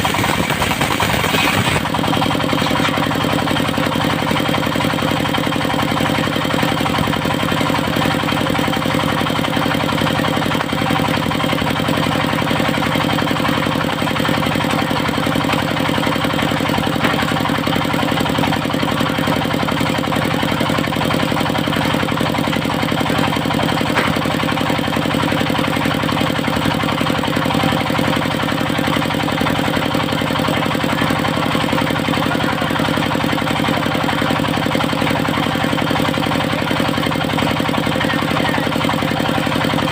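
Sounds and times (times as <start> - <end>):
high whine: 0.0 - 2.7
sawmill engine running: 0.0 - 39.9.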